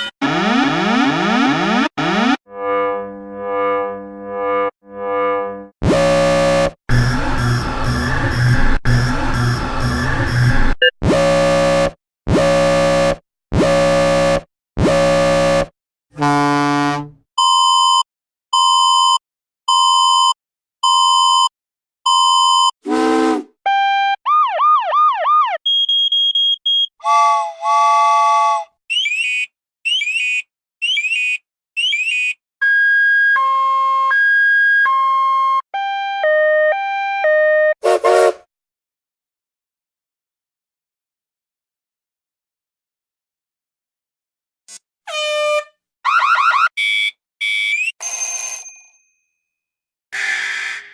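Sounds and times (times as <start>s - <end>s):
long buzzer blasts: 11.1s - 17.0s
short electronic beeps: 17.4s - 18.0s, 18.6s - 21.5s, 22.1s - 22.7s, 25.7s - 26.9s, 46.8s - 48.8s.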